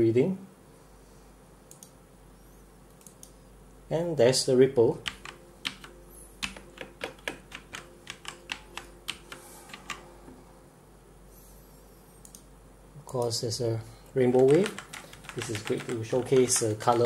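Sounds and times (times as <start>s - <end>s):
mechanical keyboard keys clacking: 5.0s - 10.0s, 14.3s - 17.0s.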